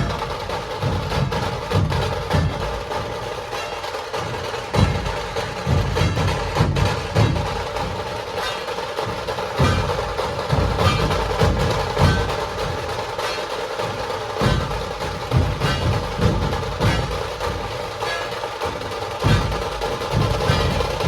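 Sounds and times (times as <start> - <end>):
rapid drum rattle: 0.0 - 21.0
deep drum strokes: 9.0 - 21.0.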